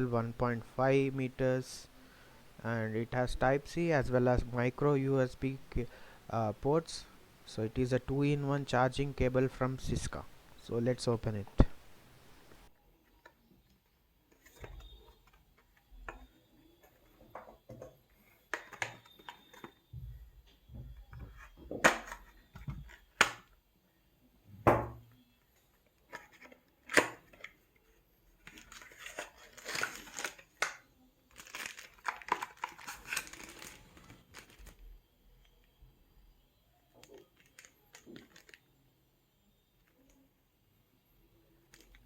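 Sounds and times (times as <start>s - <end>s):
packaging crinkling and tearing: 28.5s - 30.7s, 31.3s - 34.8s
packaging cracking and snapping: 28.5s - 34.8s, 37.1s - 38.6s.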